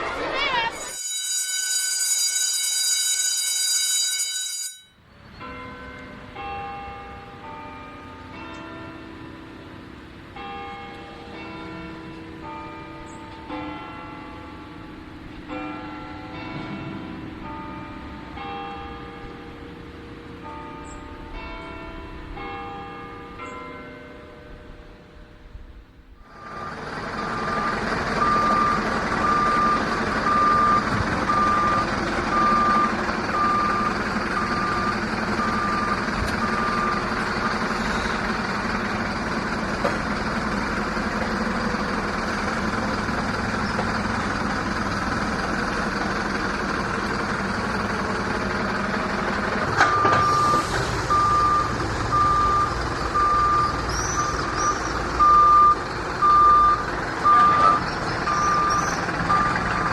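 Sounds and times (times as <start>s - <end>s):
truck reversing alarm beeping: 0.6s - 5.6s, 26.2s - 59.9s
truck engine running: 26.2s - 59.9s.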